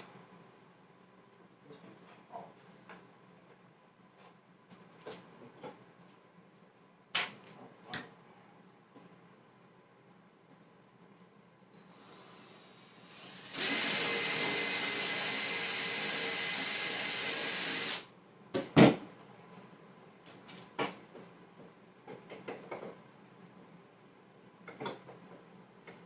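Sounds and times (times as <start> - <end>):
electric power tool running: 12.0 - 18.1.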